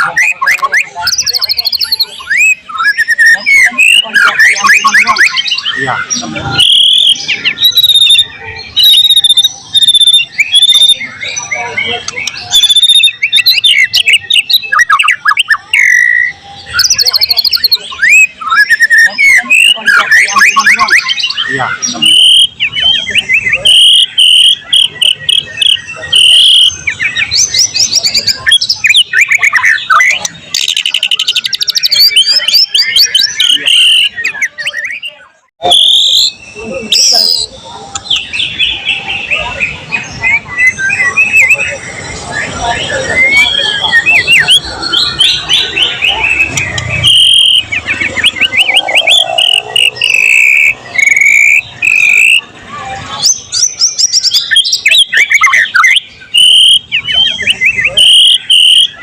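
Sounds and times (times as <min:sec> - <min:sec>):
bird singing whistles and runs: 0:00.0 - 0:05.8, 0:06.6 - 0:11.6, 0:12.2 - 0:39.6, 0:42.5 - 0:52.4, 0:53.2 - 0:59.0.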